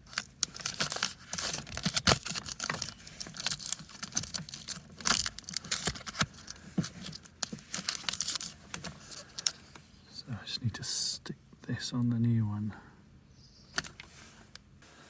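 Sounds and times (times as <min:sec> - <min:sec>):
tape and plastic crackling: 0:00.0 - 0:09.8.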